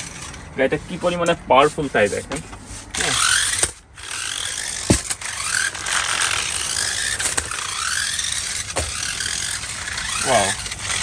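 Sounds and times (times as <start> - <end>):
toy truck motor whirring: 0.0 - 11.0
sharp knocks: 4.8 - 5.2.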